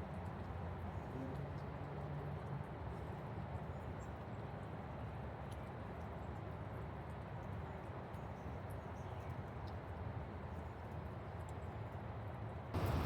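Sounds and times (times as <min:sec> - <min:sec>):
steady rain: 0:12.8 - 0:13.0.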